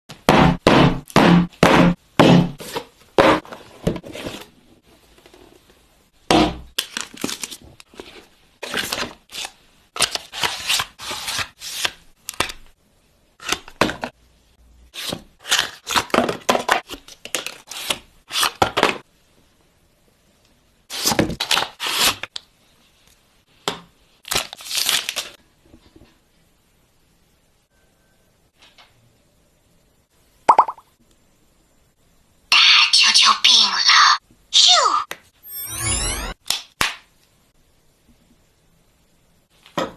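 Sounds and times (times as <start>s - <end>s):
packaging crackling and tearing: 24.2s - 25.4s.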